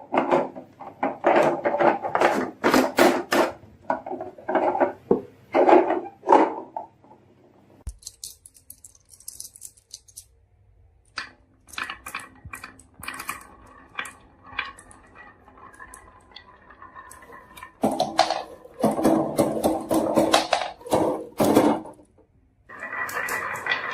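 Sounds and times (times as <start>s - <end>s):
marbles clattering down wooden run: 11.7s - 20.8s
faint rolling ring: 11.8s - 18.7s.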